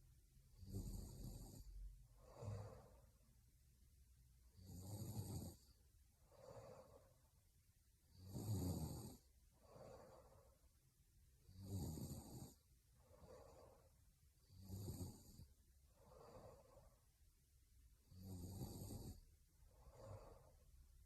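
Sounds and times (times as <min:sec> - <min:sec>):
woman snoring: 0:00.6 - 0:03.1, 0:04.6 - 0:07.2, 0:08.1 - 0:10.5, 0:11.5 - 0:17.0, 0:18.0 - 0:20.6.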